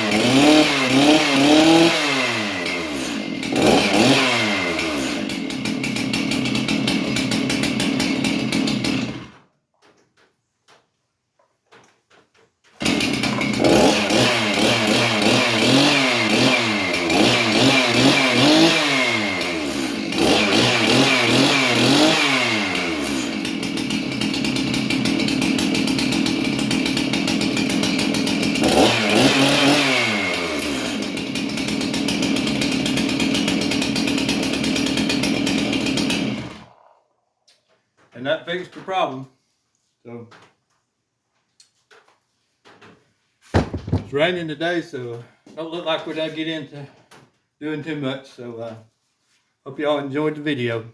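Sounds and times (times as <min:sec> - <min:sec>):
chainsaw engine revving and idling: 0:00.0 - 0:09.4, 0:12.8 - 0:37.0.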